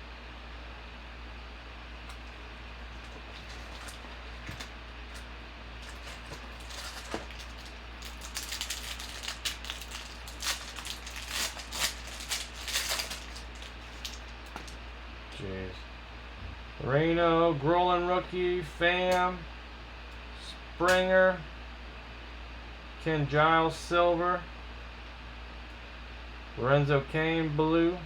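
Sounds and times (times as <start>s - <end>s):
low electrical hum: 0.0s - 28.0s
cards crinkling and crackling: 2.1s - 14.8s.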